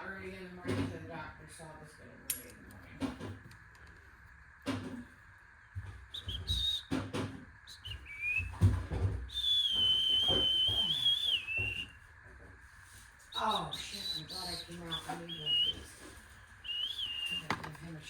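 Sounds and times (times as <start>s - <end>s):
high clear whistling: 6.1s - 8.7s, 9.3s - 12.1s, 13.2s - 18.0s.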